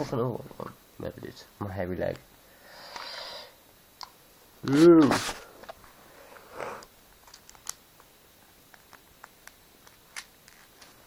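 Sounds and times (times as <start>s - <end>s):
small objects clicking: 7.2s - 7.8s.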